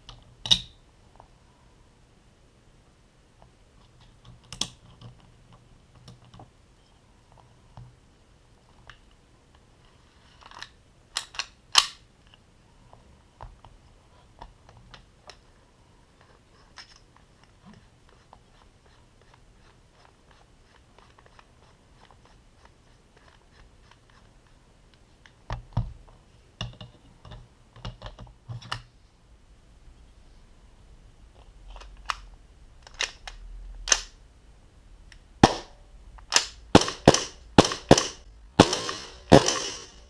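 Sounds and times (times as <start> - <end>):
pistol parts clicking and knocking: 10.5 - 12.0, 35.4 - 40.0.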